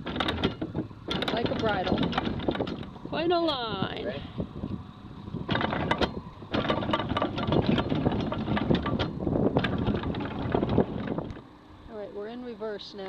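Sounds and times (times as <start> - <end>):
anchor chain clattering: 0.0 - 3.0, 5.5 - 11.4
wind noise: 0.0 - 11.5
boat engine: 0.0 - 13.0.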